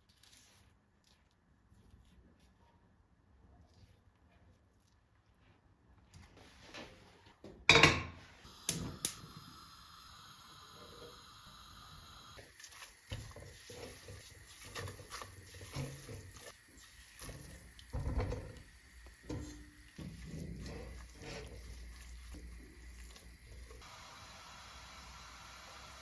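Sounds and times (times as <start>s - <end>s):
soft kitchen knocks and clatters: 17.2s - 21.4s.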